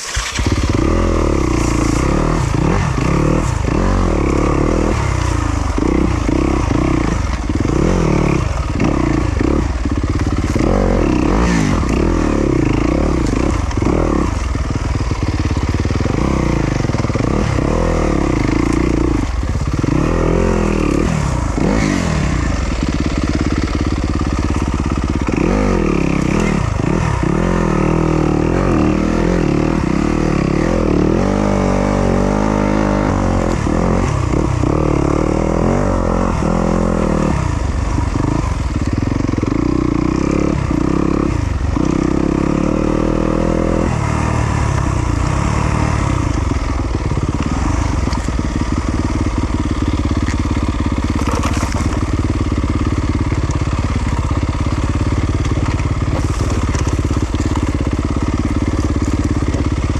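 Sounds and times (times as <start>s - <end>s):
dirt bike engine revving: 0.0s - 59.9s.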